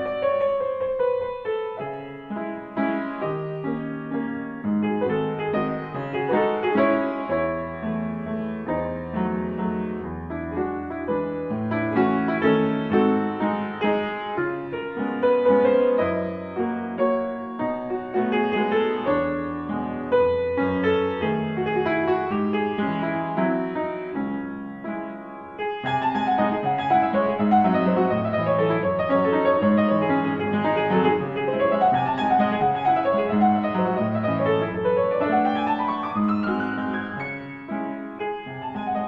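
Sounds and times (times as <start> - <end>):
gentle piano notes: 0.0 - 39.0.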